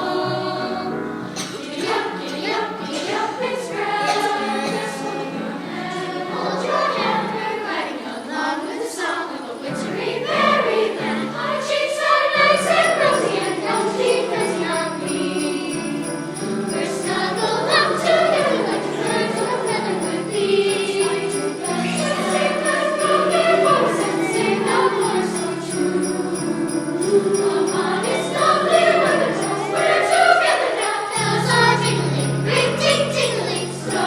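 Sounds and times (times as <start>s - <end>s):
youth choir singing: 0.0s - 34.0s
jingle bells shaken: 12.4s - 34.0s.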